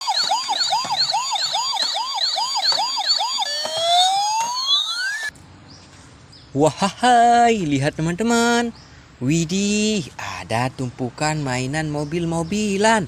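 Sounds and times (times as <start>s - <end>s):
electronic police siren: 0.0s - 5.3s.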